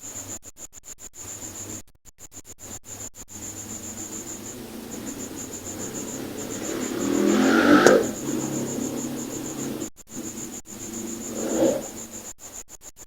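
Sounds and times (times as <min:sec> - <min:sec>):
cricket chirping: 0:03.4 - 0:12.3
rushing noise: 0:03.6 - 0:12.2.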